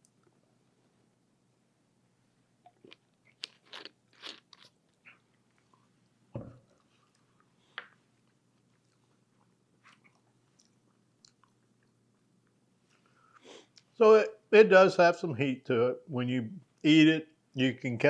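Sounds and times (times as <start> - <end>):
person chewing crunchy food: 2.7 - 5.9, 6.7 - 12.6.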